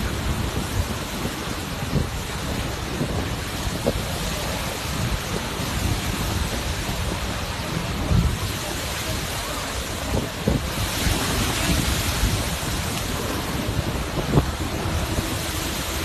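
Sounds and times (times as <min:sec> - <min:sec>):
lava hissing into water: 0:00.1 - 0:16.0.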